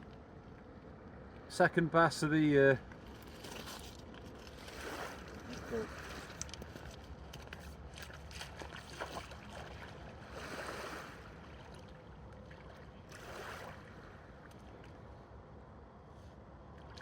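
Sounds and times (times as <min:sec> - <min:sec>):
water sloshing against a dock: 0:00.1 - 0:17.0
water splashing: 0:03.8 - 0:14.8.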